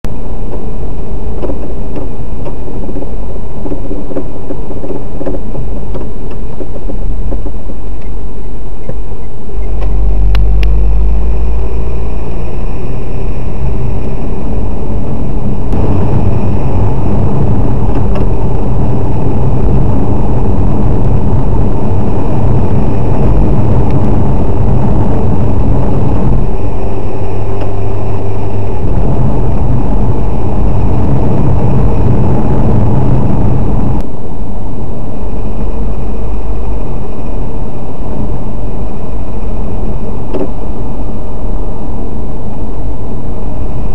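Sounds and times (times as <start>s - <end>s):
car engine and road noise: 0.0s - 43.9s
creak inside car: 0.4s - 8.2s, 40.2s - 40.6s.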